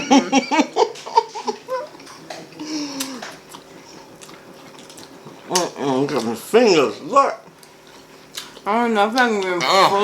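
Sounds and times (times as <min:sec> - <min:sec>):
woman laughing: 0:00.0 - 0:02.0.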